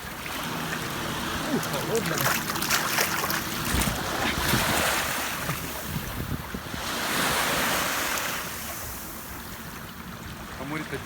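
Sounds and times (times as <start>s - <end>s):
surf washing onto beach: 0.0s - 9.6s
wind buffeting microphone: 1.2s - 8.0s.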